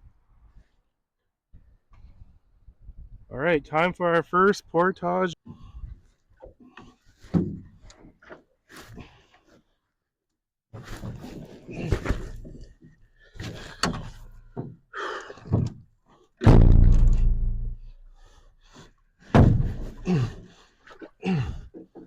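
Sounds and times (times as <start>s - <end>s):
deep hollow thud: 16.4s - 18.3s, 19.3s - 20.3s
knocks against canoe hull: 19.3s - 20.1s.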